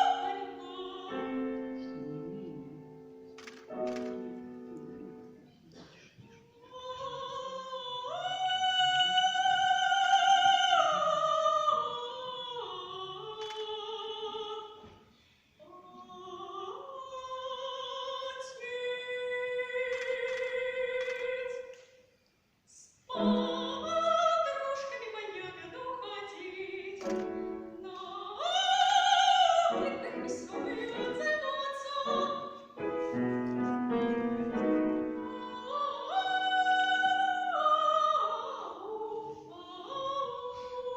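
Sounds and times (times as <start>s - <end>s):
soprano singing: 0.0s - 5.6s, 6.2s - 14.9s, 15.6s - 21.8s, 22.7s - 40.9s
piano accompaniment: 32.0s - 35.7s.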